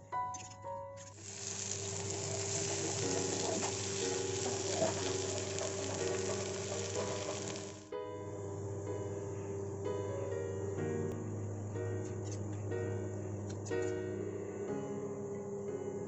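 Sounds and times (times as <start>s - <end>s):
soft background music: 0.0s - 16.0s
food sizzling in a frying pan: 1.0s - 7.9s.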